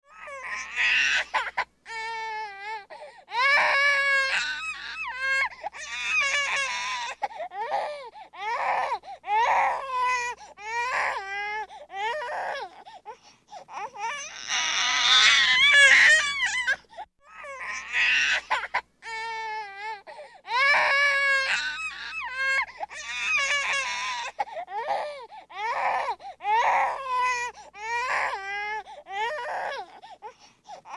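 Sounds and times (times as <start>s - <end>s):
baby crying: 0.1s - 12.8s, 13.7s - 30.1s
baby screaming: 0.2s - 2.0s, 14.0s - 19.2s, 20.5s - 25.1s.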